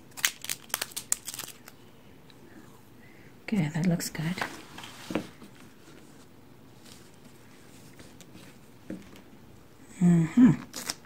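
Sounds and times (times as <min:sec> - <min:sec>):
tape and packaging rustling: 0:00.1 - 0:01.8.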